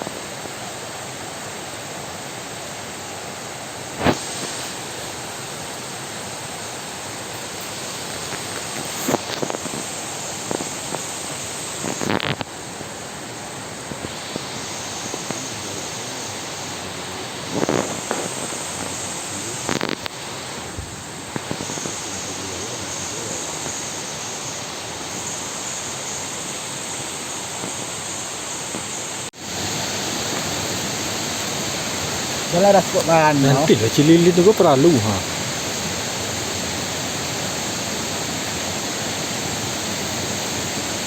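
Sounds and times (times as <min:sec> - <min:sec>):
steady rushing noise: 0:27.6 - 0:41.0.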